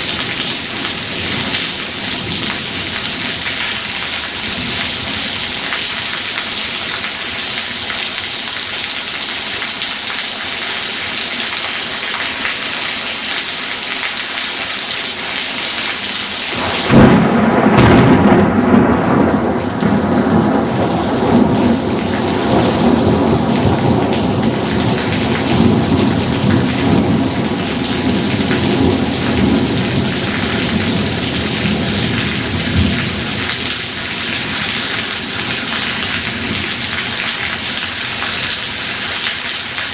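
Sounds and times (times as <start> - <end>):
steady downpour of rain: 0.0 - 39.9
thunderclap with rolling rumble: 16.6 - 37.0.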